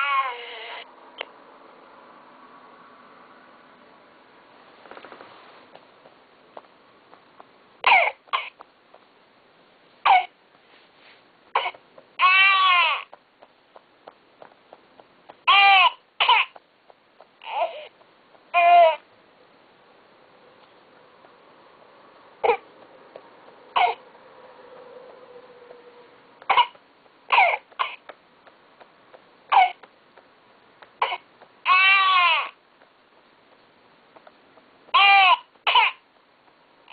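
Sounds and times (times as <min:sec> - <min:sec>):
baby crying: 0:00.0 - 0:00.9, 0:12.2 - 0:13.2, 0:15.5 - 0:16.6, 0:17.4 - 0:17.9, 0:18.5 - 0:19.0, 0:31.0 - 0:32.6, 0:34.9 - 0:36.0
recorded baby coughing: 0:07.8 - 0:08.6, 0:10.0 - 0:10.4, 0:11.6 - 0:13.2, 0:15.4 - 0:16.6, 0:17.4 - 0:19.0, 0:22.4 - 0:22.7, 0:23.7 - 0:24.0, 0:26.4 - 0:28.2, 0:29.5 - 0:29.9, 0:31.0 - 0:32.6, 0:34.9 - 0:36.0.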